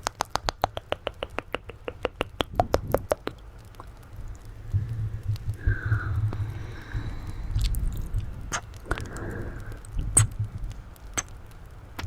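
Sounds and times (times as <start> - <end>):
wet mouth clicks and smacks: 0.0 - 4.4, 5.3 - 11.4
low rumble: 3.9 - 11.2.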